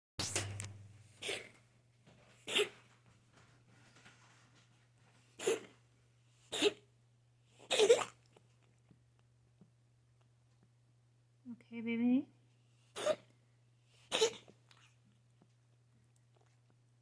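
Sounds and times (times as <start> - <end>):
person coughing harshly: 1.2 - 1.5, 13.0 - 13.2, 14.1 - 14.4.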